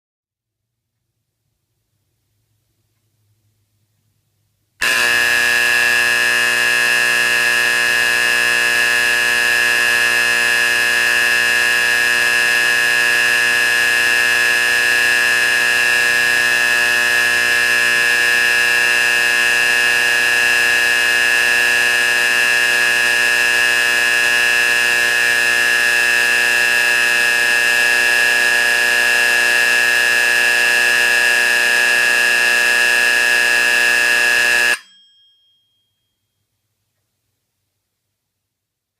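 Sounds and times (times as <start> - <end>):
fire alarm horn buzzing: 4.8 - 34.9.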